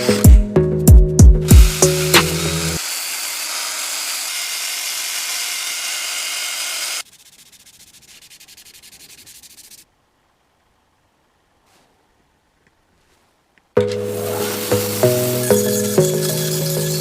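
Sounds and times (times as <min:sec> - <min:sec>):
wood being sanded: 0:01.4 - 0:09.8, 0:14.1 - 0:17.0
faint ticking scratch: 0:07.0 - 0:09.8.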